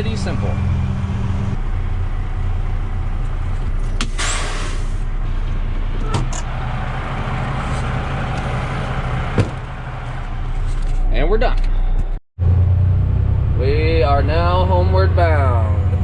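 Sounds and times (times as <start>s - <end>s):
truck engine running: 0.0s - 16.0s
short hiss: 4.1s - 5.0s.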